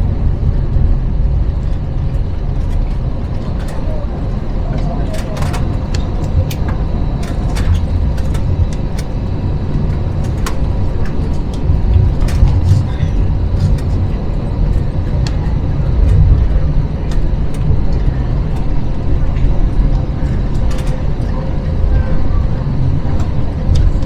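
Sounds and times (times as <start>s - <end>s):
airplane cabin low rumble: 0.0s - 24.0s
cabin fittings rattling and clicking: 4.8s - 15.4s.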